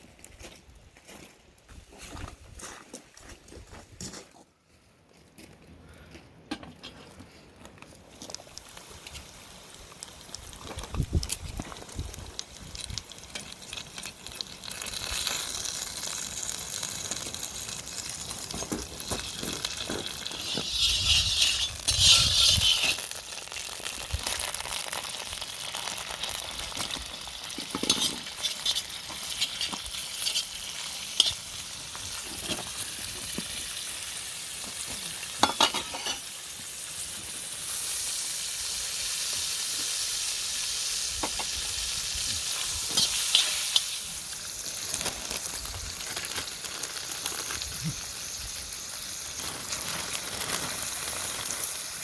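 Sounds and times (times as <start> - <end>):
food sizzling on a grill: 8.0 - 52.0
rasping sound: 20.3 - 23.1.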